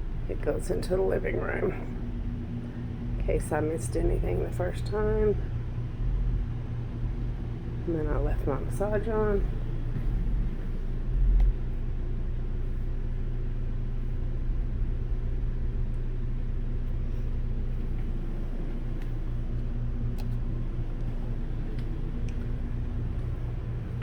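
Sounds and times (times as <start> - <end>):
vibration motor humming: 0.0 - 13.2, 17.0 - 24.0.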